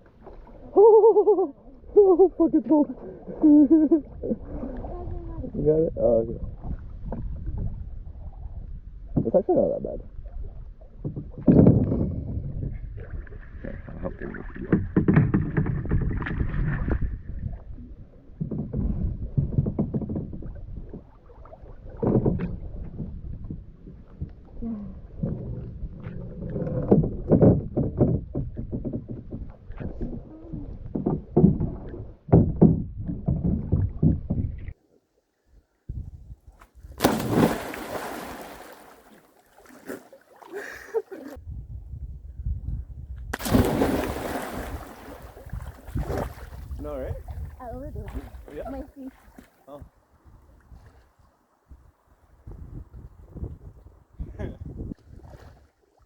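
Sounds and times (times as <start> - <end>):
water splashing around kayak: 0.0 - 5.8, 12.8 - 34.8, 36.6 - 41.4, 43.4 - 51.8, 54.8 - 56.0
loud splashes: 37.0 - 41.3, 43.4 - 46.6.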